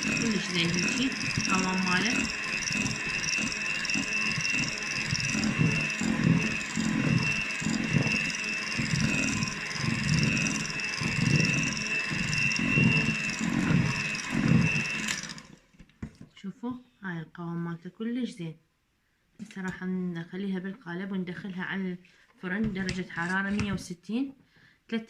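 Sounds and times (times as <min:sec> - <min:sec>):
batter churning: 0:00.0 - 0:15.6
electric mixer whining: 0:00.0 - 0:15.7.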